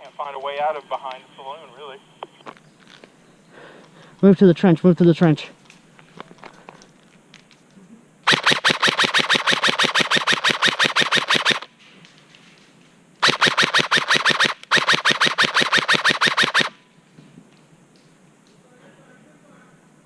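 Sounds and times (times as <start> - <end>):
airsoft rifle automatic fire: 8.2 - 11.7, 13.2 - 16.8.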